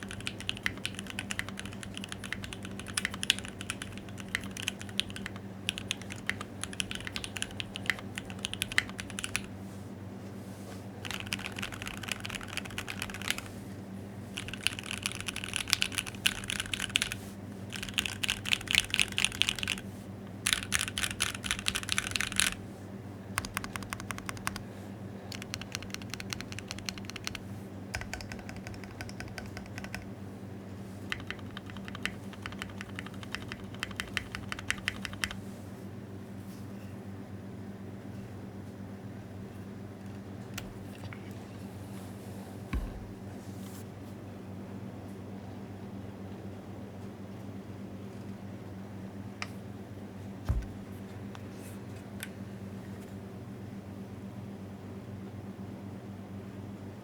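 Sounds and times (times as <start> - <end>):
typing on mechanical keyboard: 0.0 - 9.5, 11.0 - 13.5, 14.4 - 19.8, 20.4 - 22.6, 23.4 - 24.6, 25.3 - 30.1, 31.1 - 35.4.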